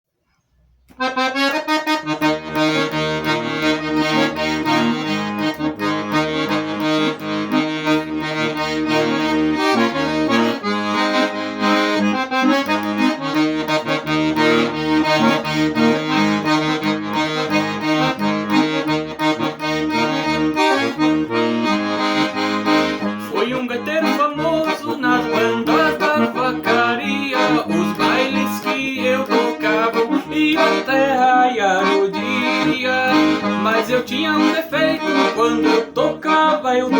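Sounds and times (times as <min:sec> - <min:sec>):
accordion playing lively tune: 0:00.9 - 0:36.9.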